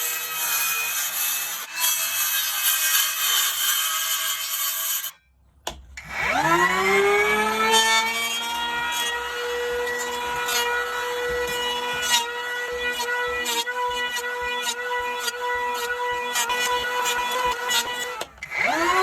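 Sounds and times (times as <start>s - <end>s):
electric planer shaving wood: 6.0s - 19.0s
planer motor whining: 6.0s - 19.0s.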